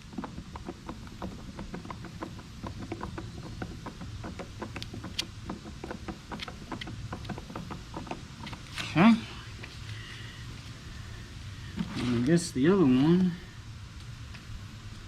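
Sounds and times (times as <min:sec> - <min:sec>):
screw being driven by hand: 0:00.0 - 0:08.9.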